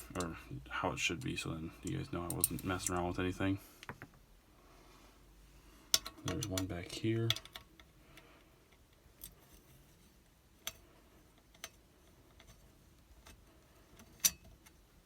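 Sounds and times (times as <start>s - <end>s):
small metal clicks and taps: 5.9s - 7.9s.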